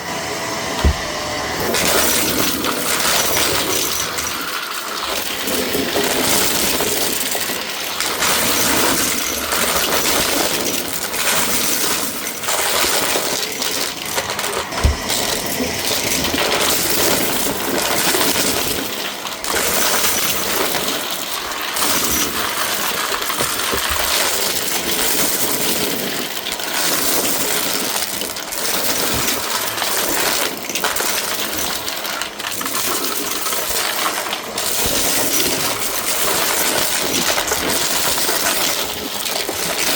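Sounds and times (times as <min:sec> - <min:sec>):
vacuum cleaner running: 0:00.0 - 0:30.6.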